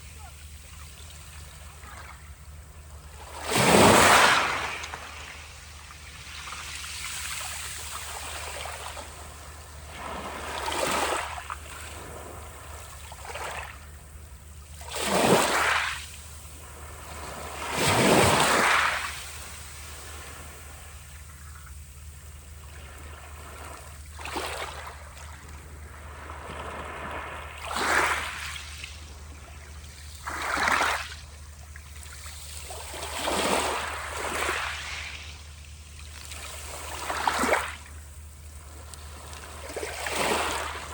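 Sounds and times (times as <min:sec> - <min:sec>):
sea waves washing in: 0:02.5 - 0:31.3
steady low rumble: 0:16.1 - 0:17.8.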